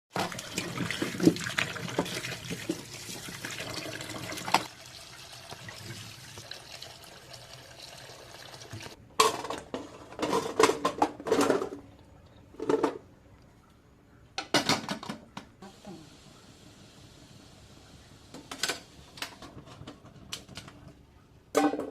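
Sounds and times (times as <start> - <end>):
water running and splashing: 0.1 - 9.0.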